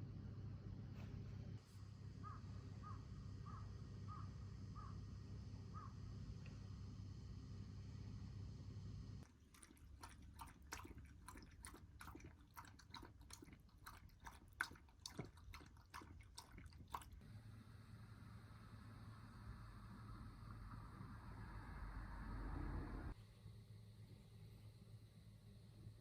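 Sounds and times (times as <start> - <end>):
wet mouth clicking and smacking: 9.5 - 17.2.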